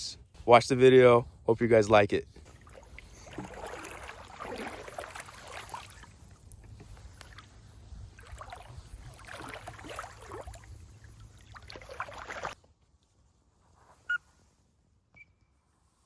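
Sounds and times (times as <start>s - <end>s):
low rumble of wind: 0.0s - 13.8s
water sloshing and splashing: 2.4s - 12.6s.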